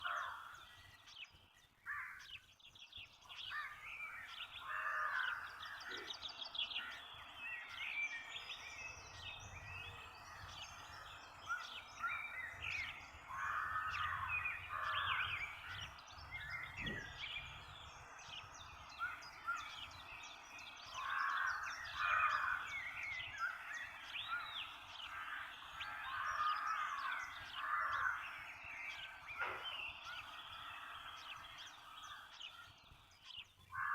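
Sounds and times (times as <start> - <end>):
harsh bird calls: 0.0 - 33.9
many birds chirping: 0.0 - 33.9.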